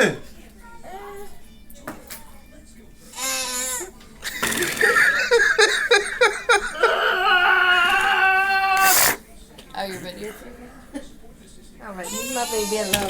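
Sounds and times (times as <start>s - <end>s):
baby crying and wailing: 6.5s - 9.2s.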